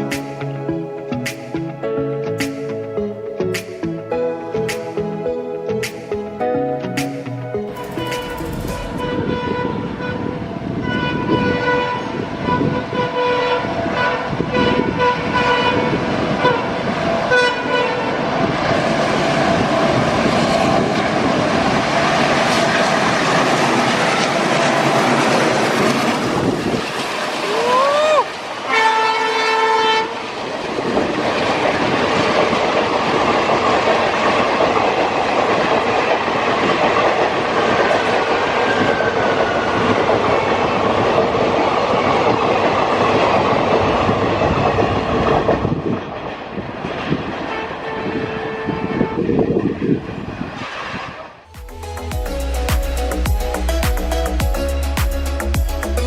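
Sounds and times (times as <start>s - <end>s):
train rushing past: 0.0s - 56.0s
short rising tone: 7.6s - 9.8s
diesel locomotive horn blasts: 7.7s - 18.6s, 28.6s - 30.4s, 47.3s - 49.8s
wheels clattering over rail joints: 19.3s - 29.8s.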